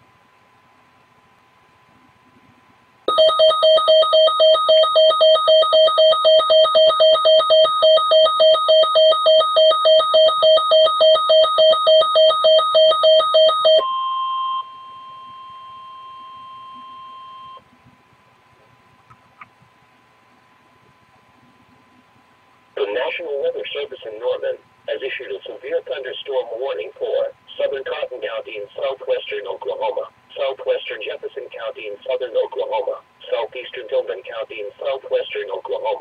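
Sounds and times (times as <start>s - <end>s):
electronic alarm beeping rapidly: 3.1s - 13.9s.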